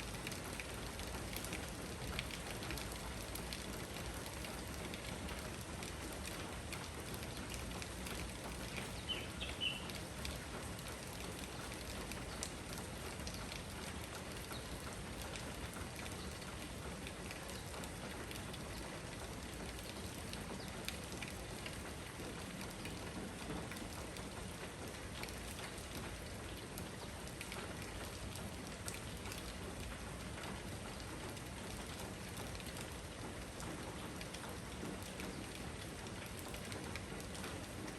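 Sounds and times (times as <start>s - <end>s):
rain falling: 0.0s - 37.9s
drips ticking on surfaces: 0.2s - 30.0s.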